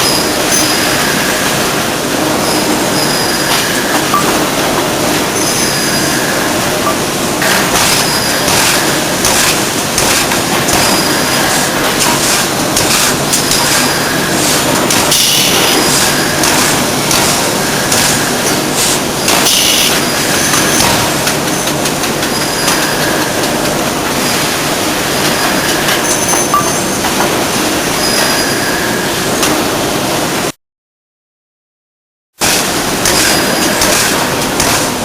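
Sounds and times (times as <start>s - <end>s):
high-pitched machine squeals: 0.0s - 1.6s, 2.2s - 4.5s, 5.2s - 9.2s, 10.7s - 11.9s, 13.3s - 16.8s, 17.4s - 23.6s, 24.2s - 29.3s, 33.1s - 34.4s
metallic machine noise: 0.0s - 30.5s, 32.4s - 35.0s.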